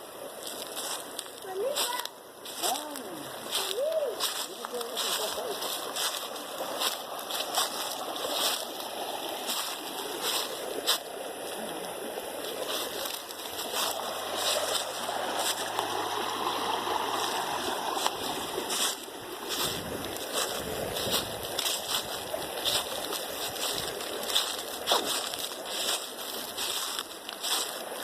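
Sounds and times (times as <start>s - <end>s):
running water with splashes: 0.0s - 28.0s.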